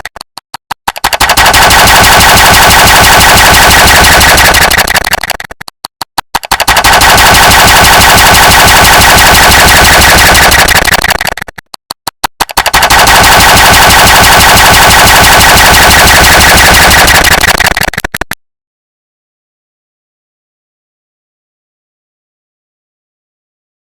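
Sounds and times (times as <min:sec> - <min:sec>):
rapid clicks rattling: 0:00.9 - 0:18.3.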